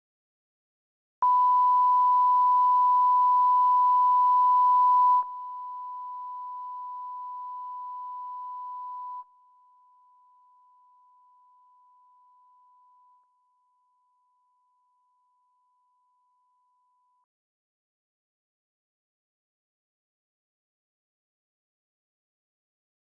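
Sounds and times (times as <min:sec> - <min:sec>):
steady beep tone: 0:01.2 - 0:09.3.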